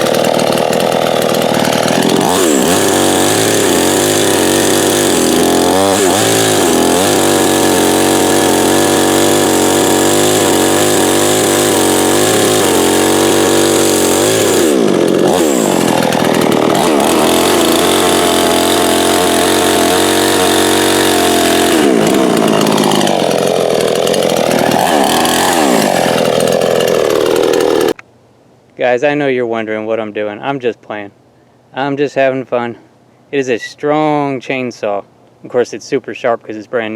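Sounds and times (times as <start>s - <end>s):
chainsaw cutting wood: 0.0s - 28.0s.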